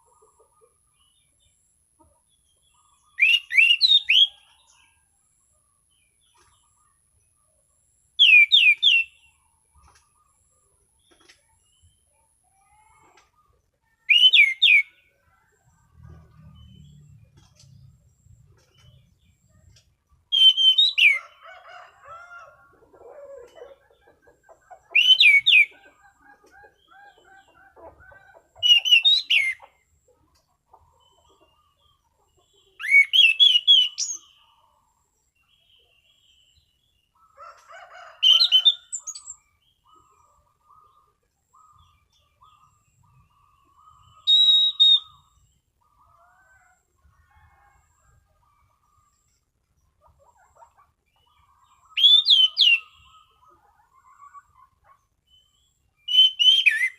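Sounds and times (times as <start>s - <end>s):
thrush singing whistled phrases: 14.1s - 14.9s, 20.3s - 21.2s, 44.2s - 45.3s, 52.0s - 52.9s, 56.1s - 56.9s.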